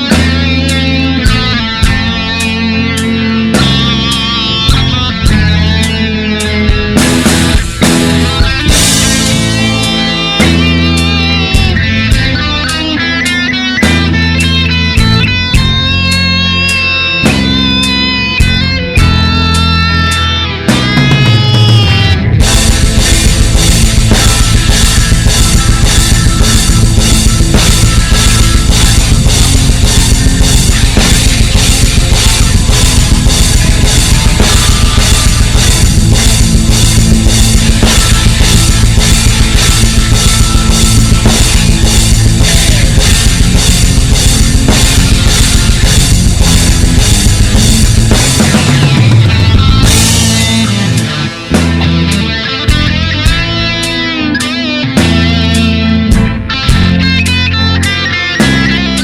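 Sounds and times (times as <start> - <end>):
rock band playing: 0.0 - 59.0
fast drum beat: 6.7 - 12.8, 20.8 - 51.8.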